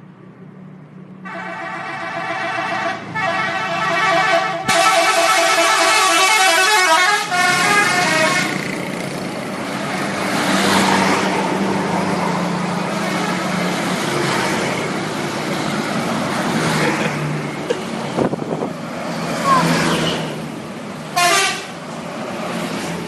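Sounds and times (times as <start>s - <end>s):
low hum of bus engines: 0.0s - 23.0s
road noise: 0.0s - 23.0s
multi-tone bus horn melody: 1.2s - 8.8s, 21.1s - 21.8s.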